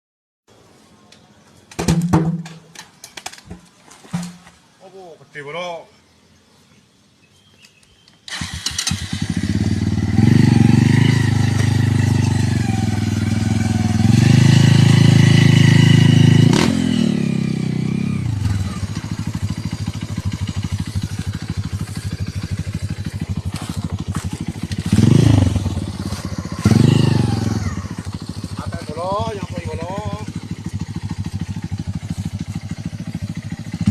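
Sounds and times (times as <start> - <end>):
motorcycle engine revving and idling: 8.3 - 33.9.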